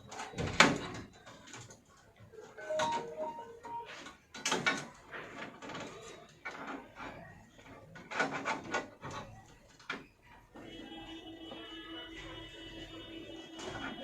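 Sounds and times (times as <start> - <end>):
computer parts rubbing and clicking: 1.3 - 10.2.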